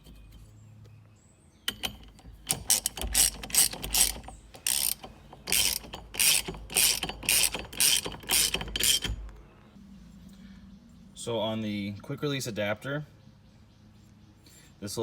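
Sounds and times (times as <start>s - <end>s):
ratchet wrench clicking: 1.7s - 9.3s.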